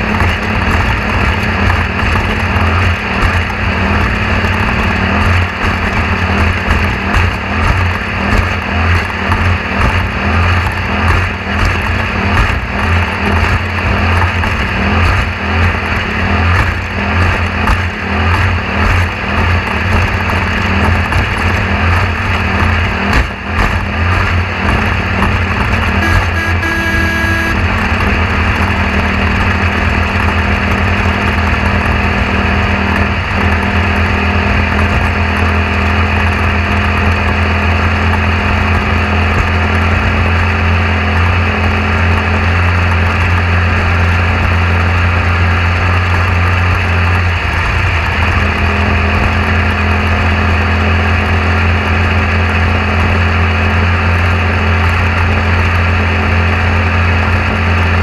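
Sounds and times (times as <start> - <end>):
machine humming: 24.8 - 28.2.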